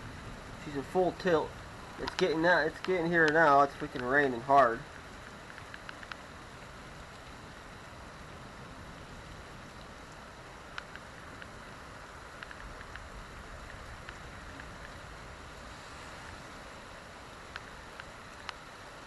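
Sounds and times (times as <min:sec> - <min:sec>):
heavy rain pouring: 0:00.0 - 0:19.0
sharp ticks: 0:02.0 - 0:06.2, 0:10.7 - 0:11.6, 0:12.3 - 0:13.1.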